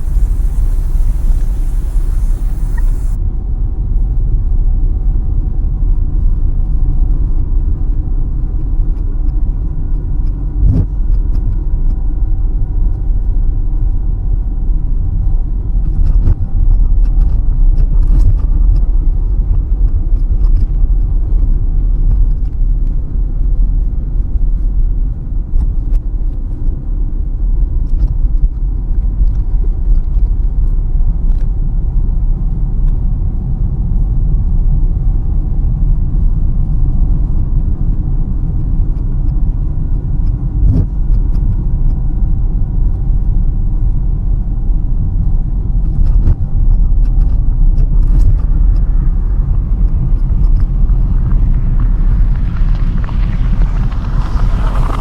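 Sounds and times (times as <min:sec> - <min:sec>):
car engine and tyre rumble: 0:00.0 - 0:03.2, 0:18.6 - 0:55.0
faint ticks: 0:00.0 - 0:03.2.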